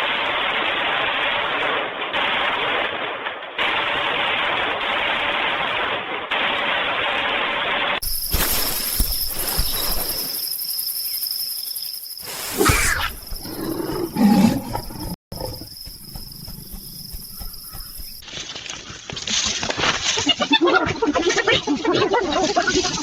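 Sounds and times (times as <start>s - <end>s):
insect chirring: 8.0s - 18.4s.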